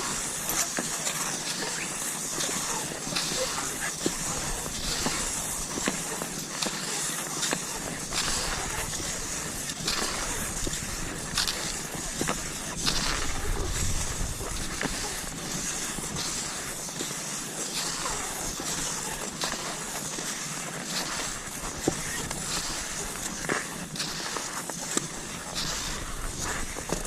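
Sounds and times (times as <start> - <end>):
skis sliding over snow: 0.0 - 27.0
crunches and clicks of pole plants: 0.1 - 16.8.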